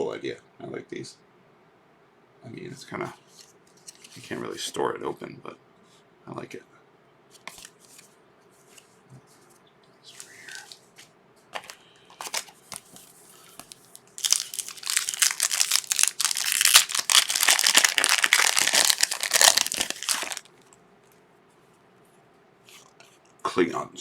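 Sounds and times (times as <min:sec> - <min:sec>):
wrapper tearing and crinkling: 0:13.7 - 0:20.6.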